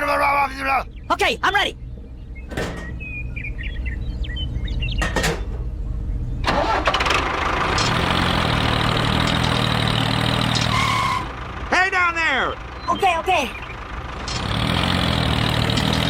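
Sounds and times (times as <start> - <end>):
small engine starting and running: 6.5 - 11.5, 14.1 - 16.0.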